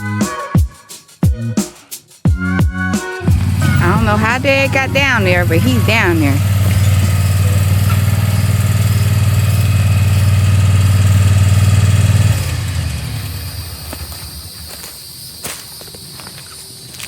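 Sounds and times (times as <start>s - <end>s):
small engine running: 3.2s - 15.2s
insects chirping: 3.4s - 17.0s.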